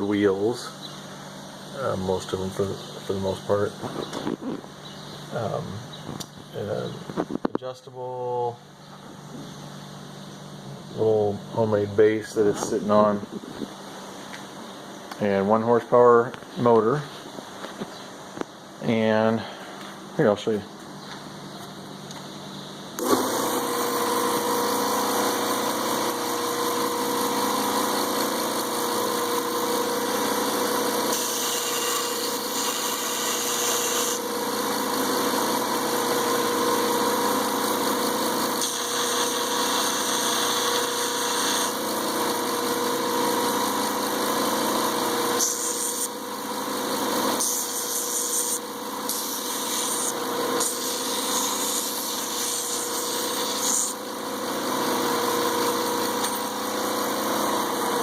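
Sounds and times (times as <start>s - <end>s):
belt grinder motor hum: 23.0s - 58.0s
grinder belt whirring: 23.0s - 58.0s.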